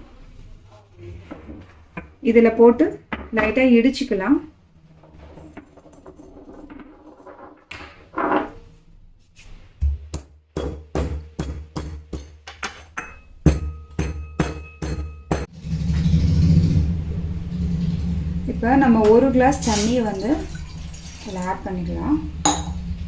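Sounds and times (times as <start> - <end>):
pestle pounding in a mortar: 9.8 - 12.5, 13.4 - 15.5.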